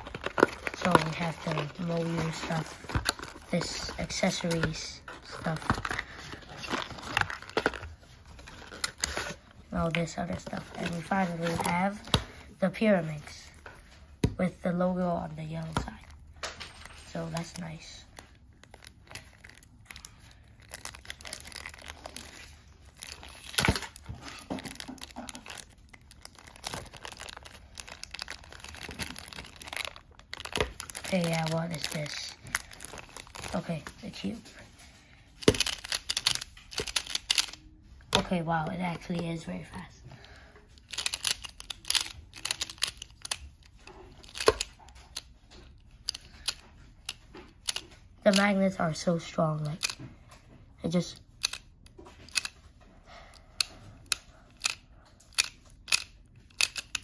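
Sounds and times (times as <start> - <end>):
packaging crinkling and tearing: 0.0 - 12.4, 17.2 - 46.5
plastic puzzle clicking: 35.4 - 38.4, 40.8 - 45.3, 46.0 - 48.6, 49.6 - 50.0, 51.3 - 52.6, 53.6 - 57.0.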